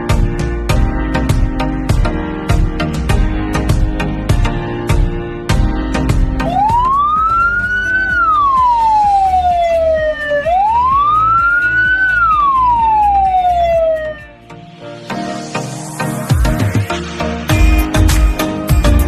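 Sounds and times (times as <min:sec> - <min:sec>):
background music: 0:00.0 - 0:19.0
ambulance siren wailing: 0:06.4 - 0:14.4.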